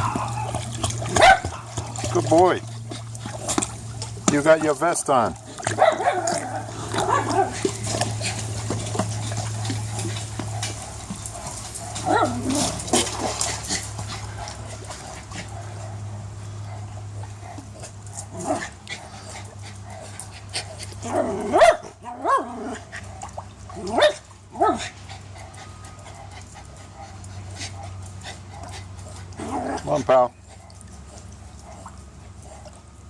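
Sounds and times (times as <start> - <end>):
dog crying out: 0.0 - 1.8, 12.0 - 12.9.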